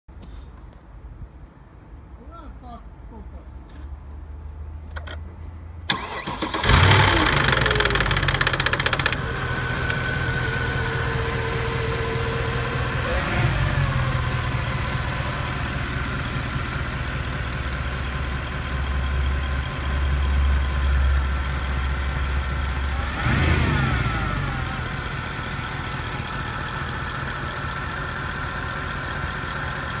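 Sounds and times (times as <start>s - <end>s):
car engine idling: 5.9s - 30.0s
car engine starting: 5.9s - 30.0s.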